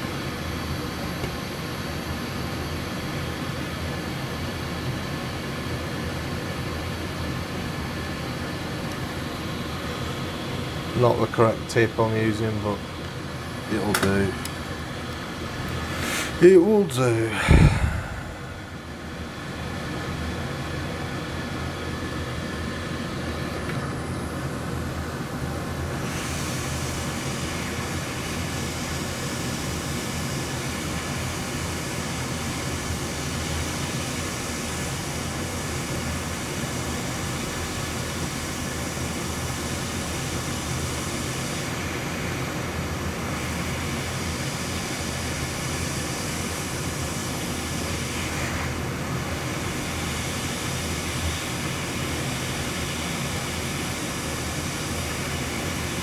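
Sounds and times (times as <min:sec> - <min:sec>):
air blower whooshing: 0:15.7 - 0:19.1.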